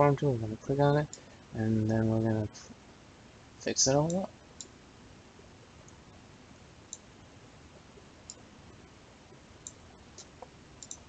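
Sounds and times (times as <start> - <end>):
faint steady hiss: 0.0 - 11.0
computer mouse clicking: 6.9 - 7.1, 8.2 - 8.5, 9.3 - 11.0.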